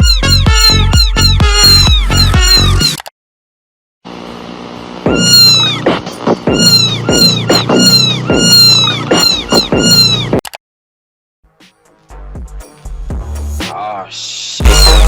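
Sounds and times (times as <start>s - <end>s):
kitten meowing: 5.1s - 5.8s, 6.5s - 10.3s.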